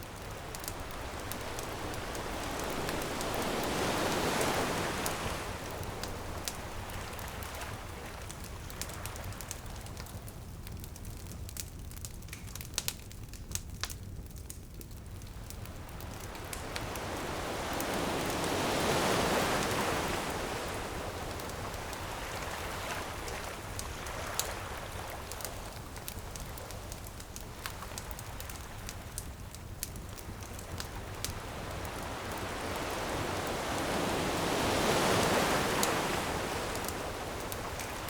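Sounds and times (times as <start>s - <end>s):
bonfire crackling and popping: 0.0s - 38.0s
ocean wave surging: 0.2s - 7.2s, 16.4s - 21.4s, 32.0s - 38.0s.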